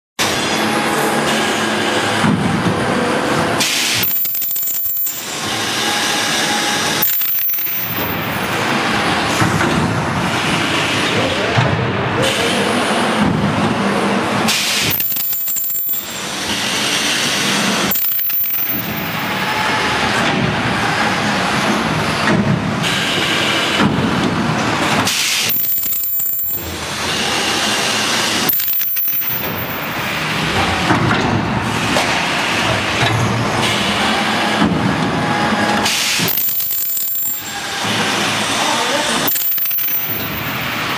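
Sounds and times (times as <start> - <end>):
welding machine metallic clattering: 3.6 - 8.8, 14.5 - 19.7, 24.7 - 30.4, 36.0 - 38.0, 39.2 - 40.9
short high-pitched whine: 3.9 - 8.6, 14.9 - 16.3, 17.9 - 19.7, 25.5 - 26.8, 28.5 - 30.1.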